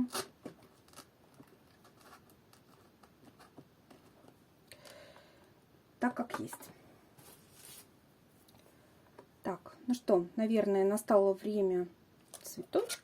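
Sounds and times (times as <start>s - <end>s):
soft rustle: 7.1s - 8.7s.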